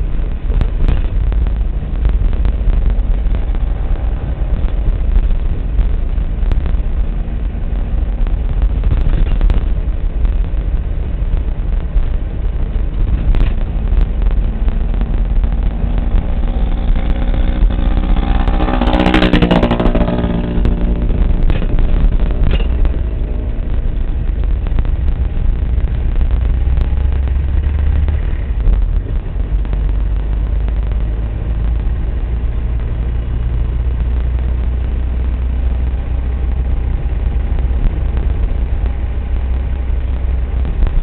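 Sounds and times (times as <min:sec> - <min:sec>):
low vehicle rumble: 0:00.0 - 0:41.0
engine passing by: 0:15.6 - 0:23.8.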